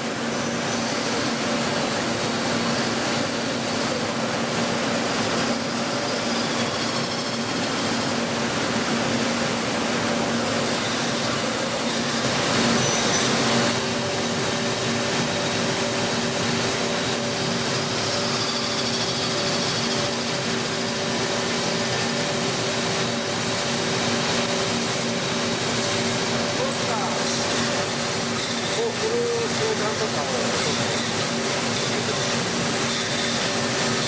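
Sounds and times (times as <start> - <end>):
machine tool humming: 0.0 - 34.0.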